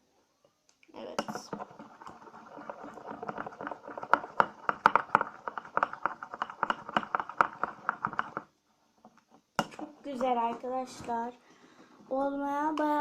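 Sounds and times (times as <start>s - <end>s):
spoon scraping a bowl: 1.1s - 8.4s.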